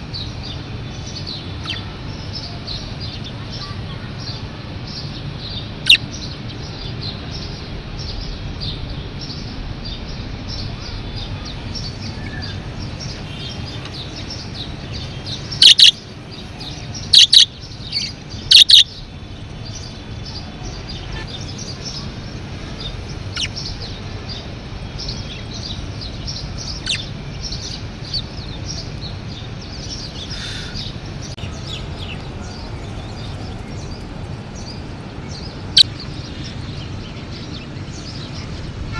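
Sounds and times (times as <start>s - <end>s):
loud sharp bird calls: 0.0s - 38.9s
low background hum: 0.0s - 38.9s
budgerigars chattering: 1.2s - 4.3s, 5.8s - 6.3s, 12.2s - 19.0s, 22.8s - 31.0s.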